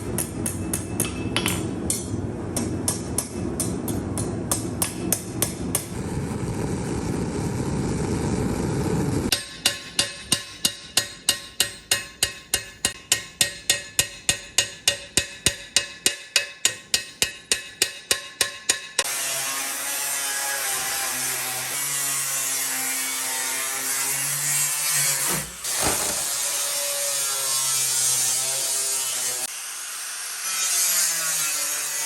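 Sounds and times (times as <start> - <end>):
hammer striking steel on anvil: 0.0 - 5.9, 9.3 - 19.1
loud steady roar: 5.2 - 9.3.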